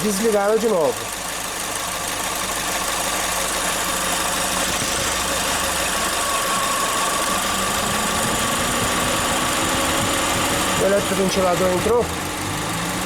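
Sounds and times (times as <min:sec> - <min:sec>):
car engine idling: 0:00.0 - 0:13.0
radiator cooling fan hum: 0:03.8 - 0:13.0.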